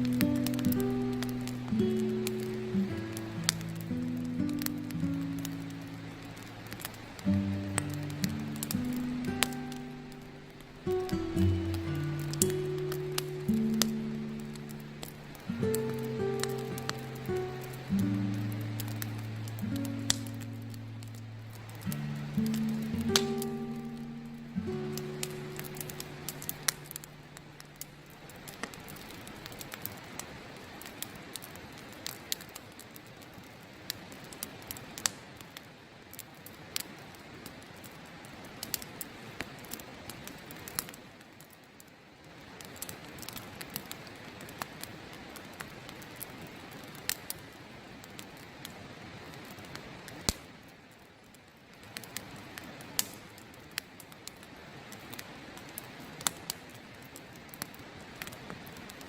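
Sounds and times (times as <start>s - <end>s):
river water rushing: 0.0s - 31.4s
campfire crackling and popping: 0.0s - 59.0s.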